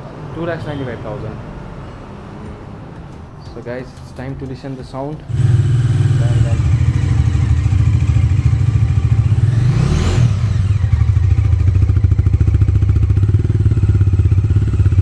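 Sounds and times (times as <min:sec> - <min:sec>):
motorcycle engine idling: 0:05.3 - 0:15.0.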